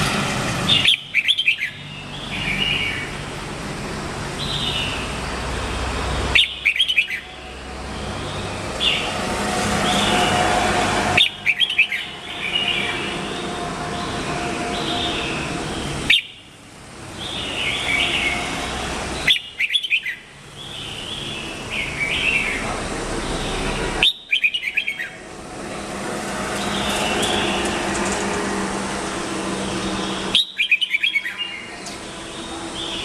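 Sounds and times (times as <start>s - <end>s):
bird singing chirpy notes: 0.7s - 3.2s, 6.2s - 10.4s, 11.2s - 16.5s, 17.2s - 25.3s, 30.0s - 33.0s.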